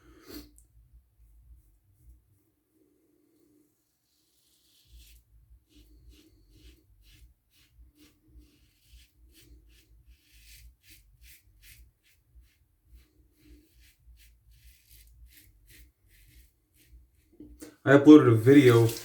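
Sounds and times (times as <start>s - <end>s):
razor scraping stubble: 4.3s - 17.6s, 18.2s - 19.0s.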